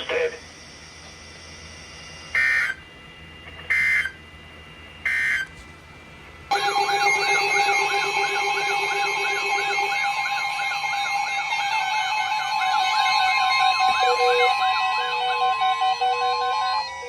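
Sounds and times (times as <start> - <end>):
screechy digital data bursts: 0.0 - 2.8, 6.5 - 17.0
loud warbling alert tone: 6.5 - 17.0.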